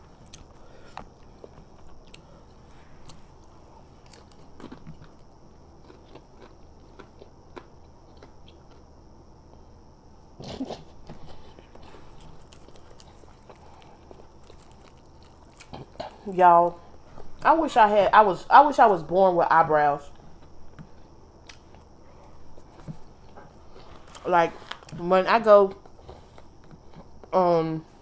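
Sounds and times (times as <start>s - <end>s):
person chewing food: 0.0s - 8.9s, 10.4s - 16.2s, 20.3s - 25.0s, 25.7s - 27.3s.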